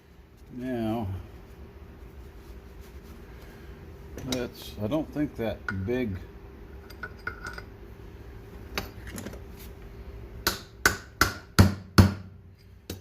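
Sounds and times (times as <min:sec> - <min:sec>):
hammer tapping on metal: 0:10.4 - 0:12.3.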